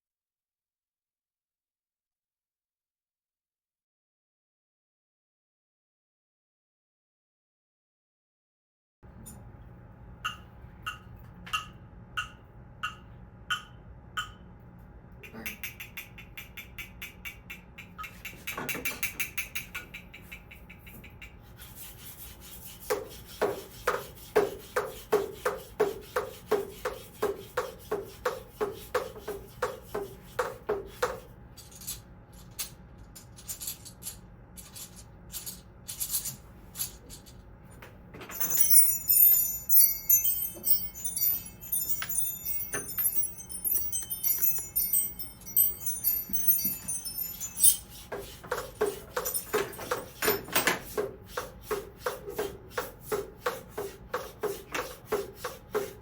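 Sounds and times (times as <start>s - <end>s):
high chimes and jingling bells: 38.3s - 48.1s, 49.2s - 50.0s.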